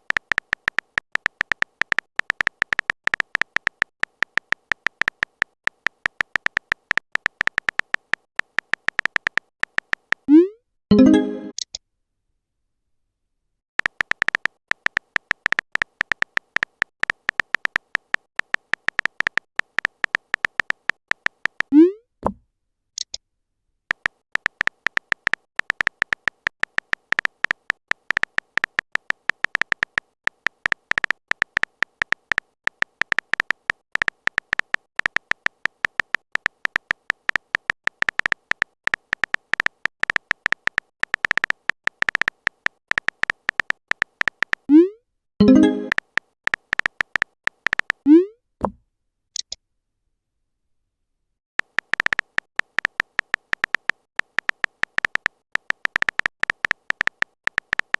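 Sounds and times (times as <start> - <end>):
typing clicking beeps: 0.0 - 11.7, 13.8 - 22.0, 23.9 - 48.3, 51.6 - 57.9.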